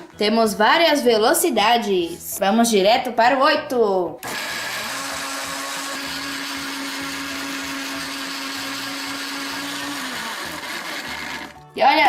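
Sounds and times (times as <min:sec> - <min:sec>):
electric blender running: 0:04.2 - 0:11.6.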